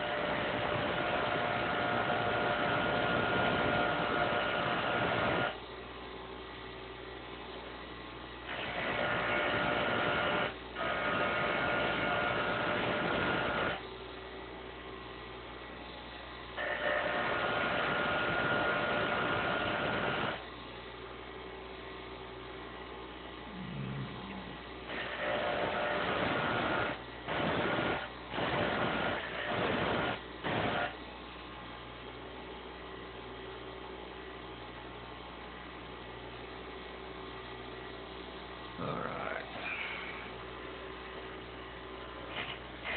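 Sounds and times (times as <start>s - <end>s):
grinder motor hum: 23.4s - 27.9s.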